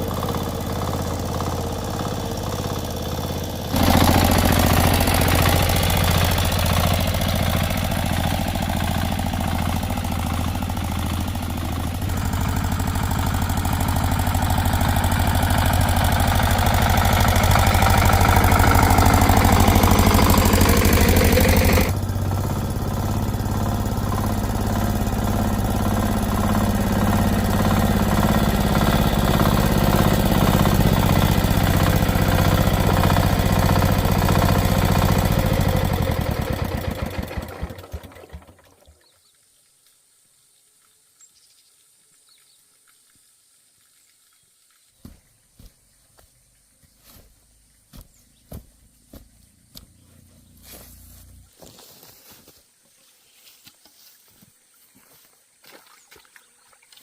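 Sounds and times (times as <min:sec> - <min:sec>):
small engine running: 0:00.0 - 0:39.1.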